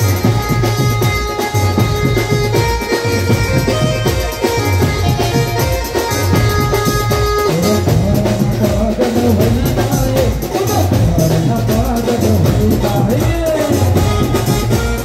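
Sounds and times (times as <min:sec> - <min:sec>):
gliding melodic line: 0:00.0 - 0:08.5
live band music: 0:00.0 - 0:15.0.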